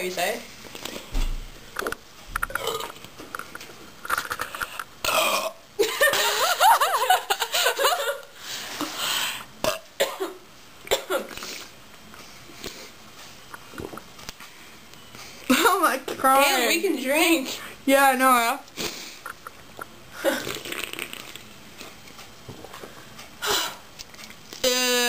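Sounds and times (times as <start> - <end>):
person burping: 2.5 - 3.0, 5.0 - 5.6, 9.6 - 10.2.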